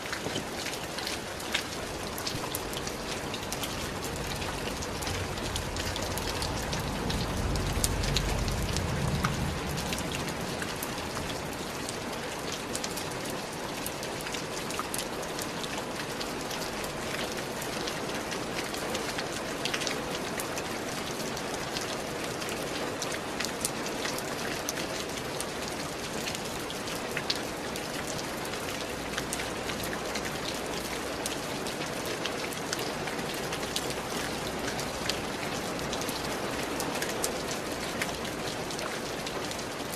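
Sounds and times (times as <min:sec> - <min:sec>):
raindrops ticking: 0:00.0 - 0:39.9
steady rain falling: 0:00.0 - 0:39.9
low rumble: 0:03.7 - 0:11.6.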